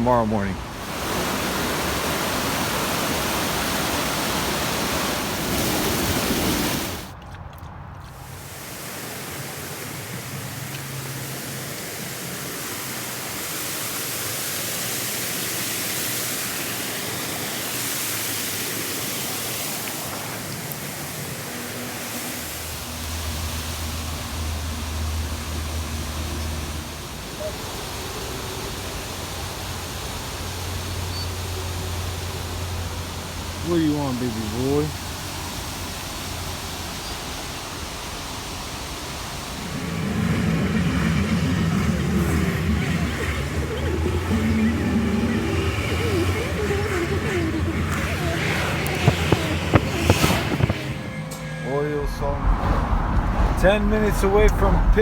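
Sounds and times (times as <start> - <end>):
waterfall rushing: 0.0 - 7.2, 8.3 - 55.0
road noise: 0.0 - 55.0
pickup truck engine rumble: 20.0 - 55.0.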